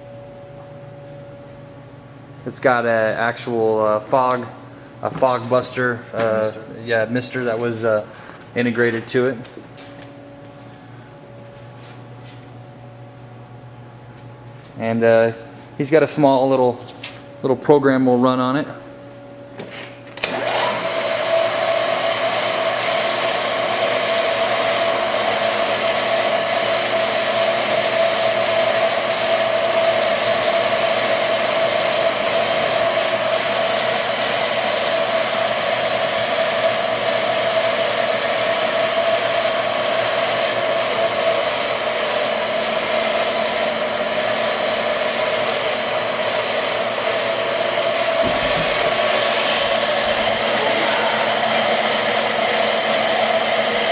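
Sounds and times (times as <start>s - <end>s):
milling machine whine: 19.1s - 53.9s.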